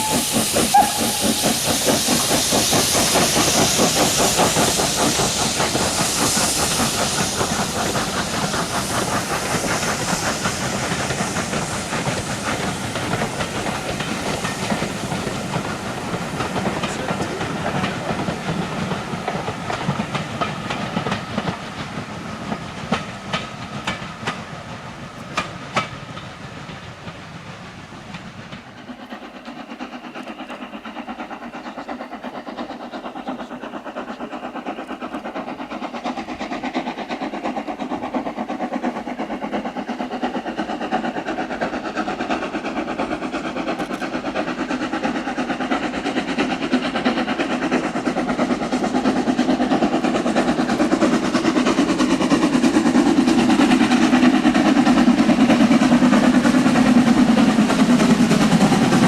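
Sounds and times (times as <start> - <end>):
hiss of escaping steam: 0.0 - 59.0
steam train running: 0.0 - 59.0
wheels clicking over rail joints: 43.3 - 44.3.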